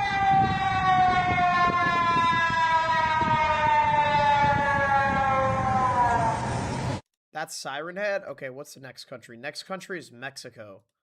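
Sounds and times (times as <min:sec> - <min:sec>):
warning siren tone sliding down: 0:00.0 - 0:07.0.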